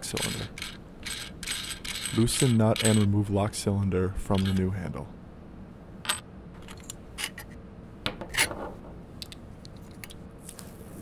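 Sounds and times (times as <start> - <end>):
metallic clicks and clinks: 0.0 - 3.2, 4.3 - 4.7.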